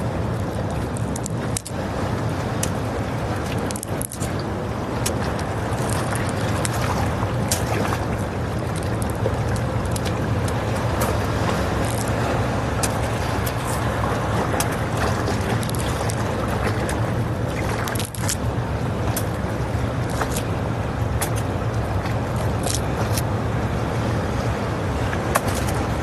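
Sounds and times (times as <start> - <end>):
waves breaking: 0.0 - 26.0
wind buffeting microphone: 0.0 - 26.0
small clicks and knocks: 0.7 - 1.8.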